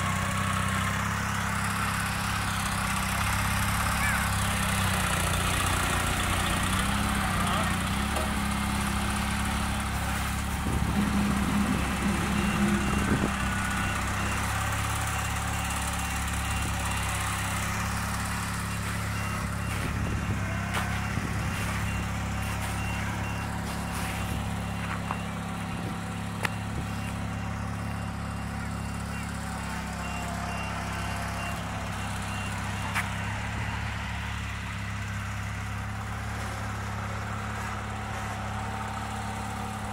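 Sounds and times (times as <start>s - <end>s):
vehicle engine running: 0.0s - 39.9s
repeated high beep: 10.8s - 17.4s, 18.6s - 25.8s, 26.4s - 32.9s.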